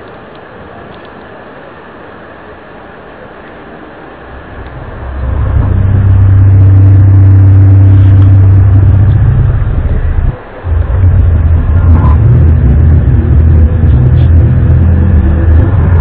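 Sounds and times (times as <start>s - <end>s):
loud low drone with deep rumble: 4.1s - 16.0s.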